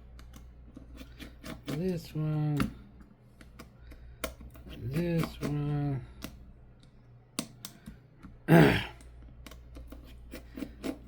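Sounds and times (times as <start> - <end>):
screwdriver clicks and taps: 6.2 - 8.4, 9.0 - 10.1
person vocal sound: 8.5 - 9.0.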